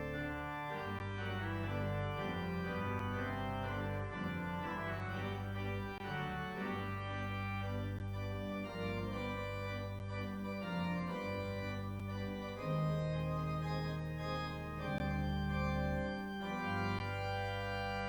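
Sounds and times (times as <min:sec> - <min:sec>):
organ chords: 0:00.0 - 0:18.0.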